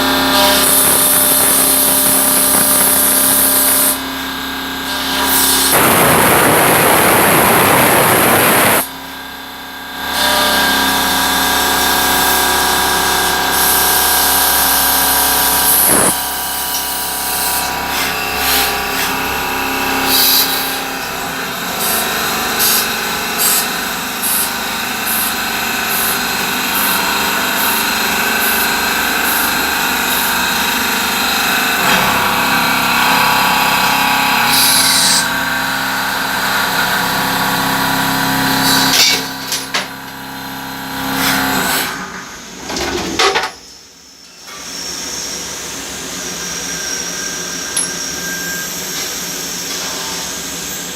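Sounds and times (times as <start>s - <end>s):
machine motors humming and whining: 0.0s - 50.9s
short high-pitched whines: 15.6s - 16.3s.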